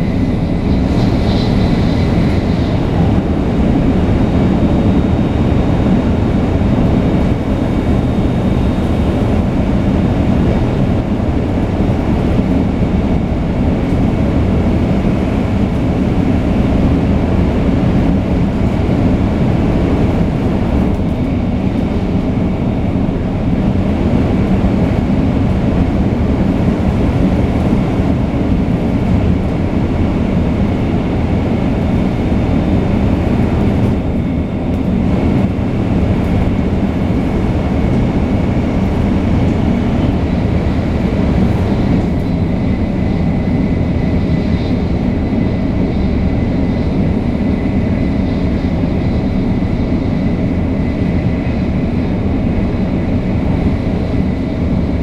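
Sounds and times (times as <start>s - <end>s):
faint high whine: 0.0s - 5.7s
train heavy rumble: 0.0s - 55.0s.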